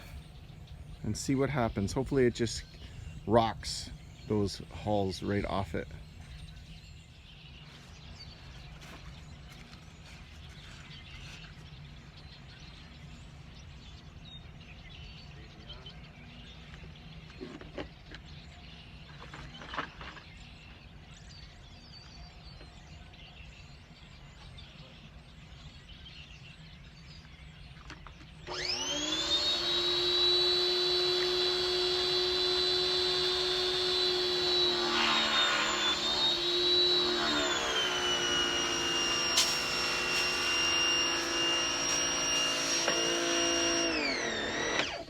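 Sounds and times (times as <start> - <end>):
pressure washer whining: 28.5 - 45.0
hiss: 37.8 - 40.5.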